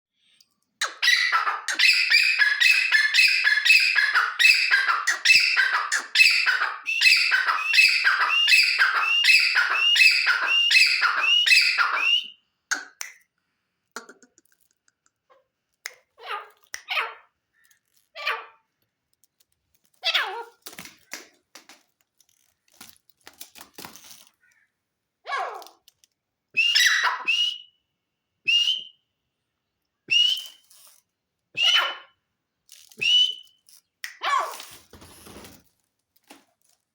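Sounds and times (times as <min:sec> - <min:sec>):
francolin calling: 0:01.0 - 0:12.3.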